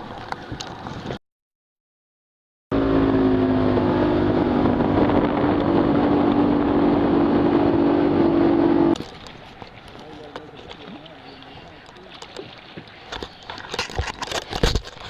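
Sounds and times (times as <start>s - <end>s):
boat engine drone: 2.7s - 13.9s
wind and water rushing: 2.7s - 15.0s.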